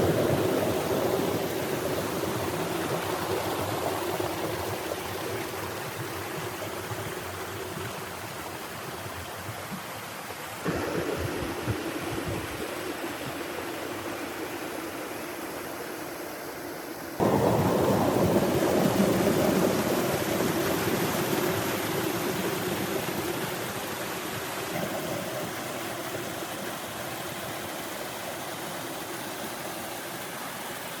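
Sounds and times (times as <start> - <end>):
water rushing: 0.0 - 31.0.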